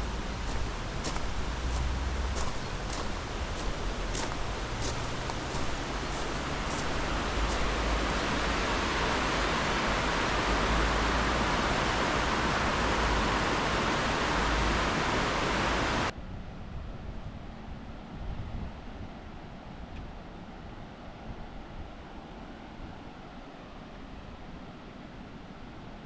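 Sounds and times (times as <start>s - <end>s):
waterfall rushing: 0.0s - 16.1s.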